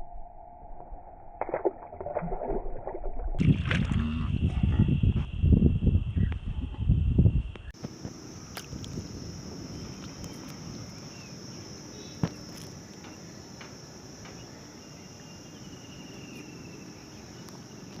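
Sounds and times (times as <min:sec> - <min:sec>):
insects trilling: 0:04.0 - 0:18.0.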